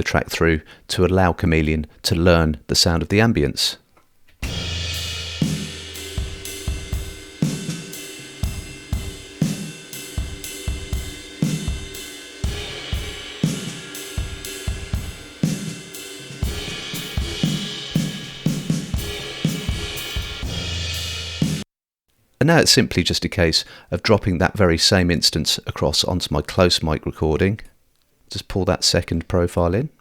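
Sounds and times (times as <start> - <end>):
kick and snare drum hits: 4.4 - 15.7, 16.4 - 20.8
cymbal wash: 4.4 - 21.6.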